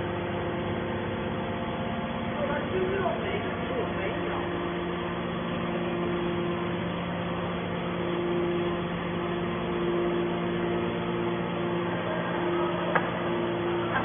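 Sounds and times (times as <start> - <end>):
hydraulic pump motor humming: 0.0 - 14.0.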